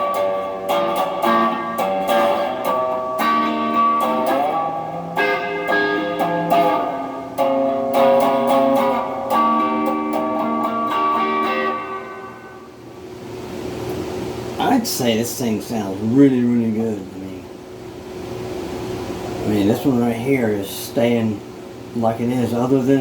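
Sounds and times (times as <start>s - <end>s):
electric guitar blues licks: 0.0s - 12.8s.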